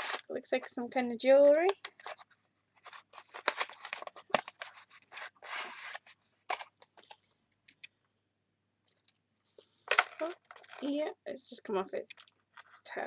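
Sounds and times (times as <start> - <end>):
packaging clicks and rustles: 1.7 - 7.9, 9.9 - 10.9, 12.1 - 12.9.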